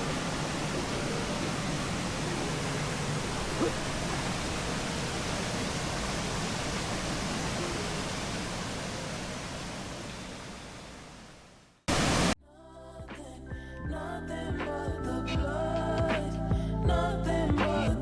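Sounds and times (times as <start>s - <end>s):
loud burst of noise: 0.0s - 12.4s
waterfall rushing: 0.0s - 12.4s
music: 12.4s - 18.0s.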